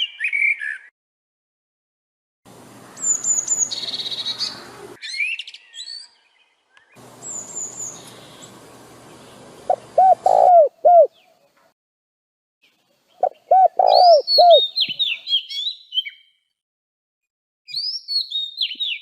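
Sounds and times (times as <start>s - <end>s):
birds chirping: 2.5s - 11.7s, 12.6s - 16.4s
buzzy bird trill: 2.8s - 5.6s, 13.2s - 16.2s
low cooing: 9.7s - 11.2s, 13.2s - 14.6s.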